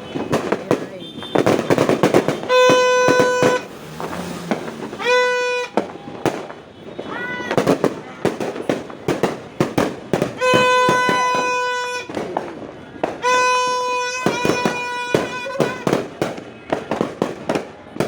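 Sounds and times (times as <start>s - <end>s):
firecrackers and fireworks bursting: 0.0s - 18.0s
horn blowing long notes: 2.2s - 6.2s, 10.4s - 12.2s, 13.2s - 16.0s.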